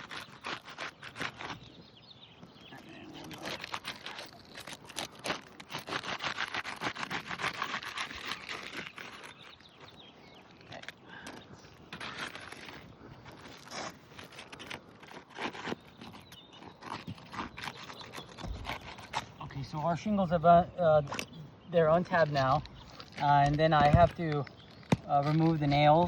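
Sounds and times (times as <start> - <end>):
roofing shingles tearing loose: 3.2 - 10.0, 11.9 - 19.4, 21.9 - 26.0.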